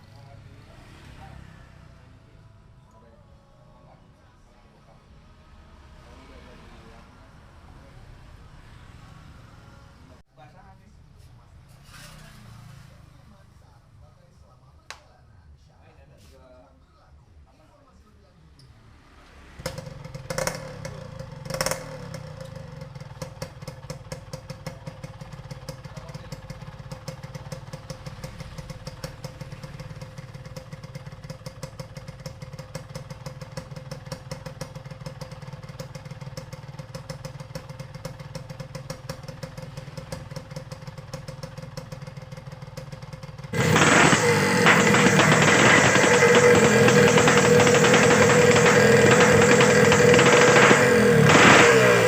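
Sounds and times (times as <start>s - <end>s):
two-stroke motorcycle engine idling: 19.6s - 52.0s
engine pops: 43.6s - 52.0s.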